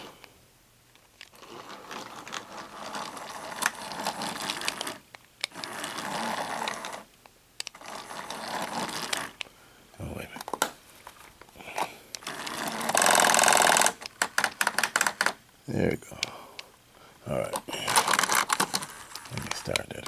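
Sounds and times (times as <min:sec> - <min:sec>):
toy train motor whirring: 0:01.2 - 0:09.5, 0:12.1 - 0:15.4, 0:17.3 - 0:20.0.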